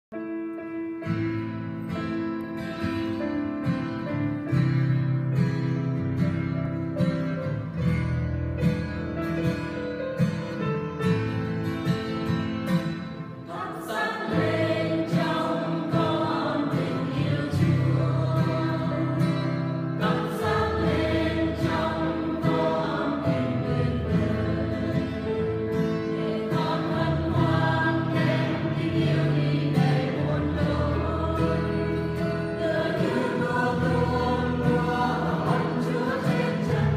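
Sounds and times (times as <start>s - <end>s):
choir singing a hymn: 12.8s - 36.9s.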